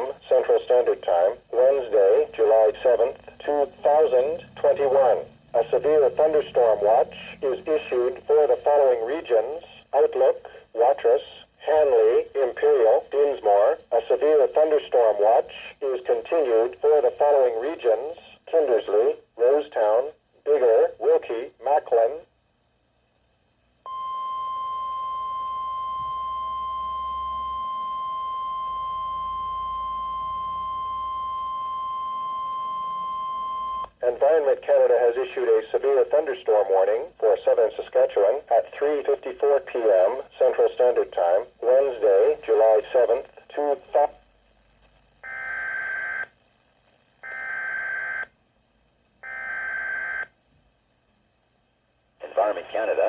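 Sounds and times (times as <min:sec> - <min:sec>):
steady high warning beep: 0:23.9 - 0:33.9, 0:49.2 - 0:50.3.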